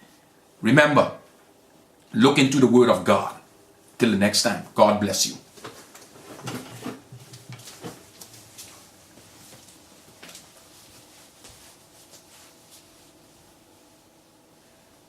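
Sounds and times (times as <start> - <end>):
faint clicks and rustles: 5.5 - 13.2.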